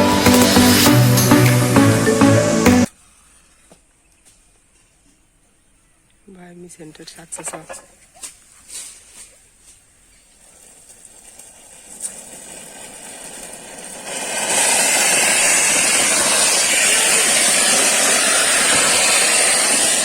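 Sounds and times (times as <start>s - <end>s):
churned water hissing: 10.4s - 20.0s
small electric motor whirring: 12.0s - 20.0s.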